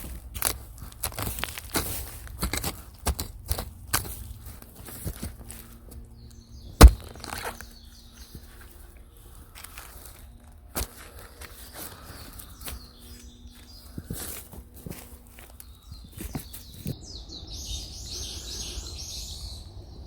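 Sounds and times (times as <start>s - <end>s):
footsteps on dry leaves: 0.0s - 17.0s
sharp knock: 6.8s - 7.1s.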